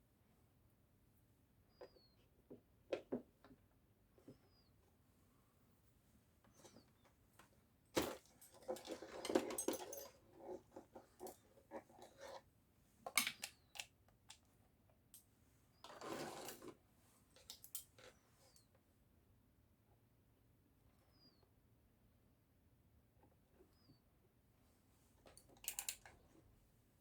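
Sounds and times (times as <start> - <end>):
clicks and taps of small parts: 13.1 - 14.5, 25.3 - 26.1.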